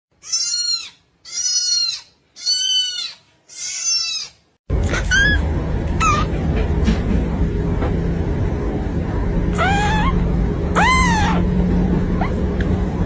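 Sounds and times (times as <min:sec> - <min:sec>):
kitten mewing: 0:00.2 - 0:05.4, 0:09.6 - 0:11.5
low hum: 0:04.7 - 0:13.0.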